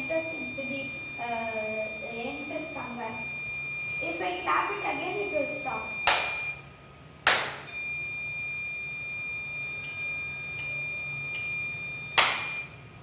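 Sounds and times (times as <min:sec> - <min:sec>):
high-pitched alarm buzzer tone: 0:00.0 - 0:06.8, 0:07.6 - 0:13.0
hand clap: 0:06.1 - 0:06.4, 0:07.2 - 0:07.7, 0:12.2 - 0:12.6.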